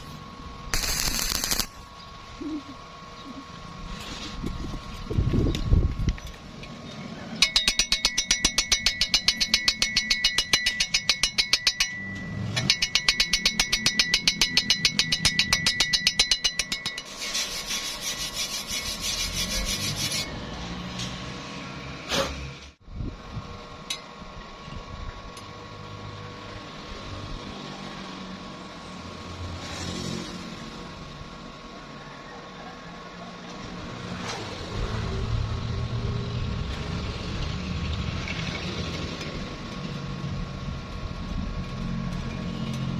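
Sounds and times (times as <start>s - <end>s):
hand tool rasping on metal: 7.4s - 11.9s, 12.7s - 20.3s.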